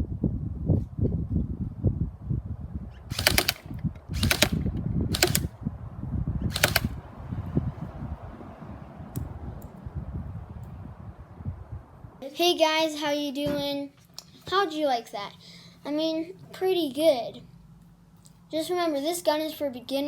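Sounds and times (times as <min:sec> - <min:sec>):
airsoft rifle full-auto bursts: 0:03.1 - 0:05.5, 0:06.5 - 0:07.0.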